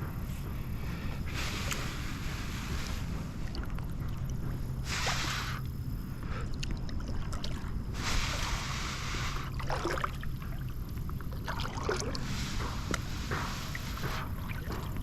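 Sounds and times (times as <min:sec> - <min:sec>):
water lapping against hull: 0:00.0 - 0:15.0
water dripping and gurgling: 0:02.9 - 0:08.7, 0:09.4 - 0:15.0.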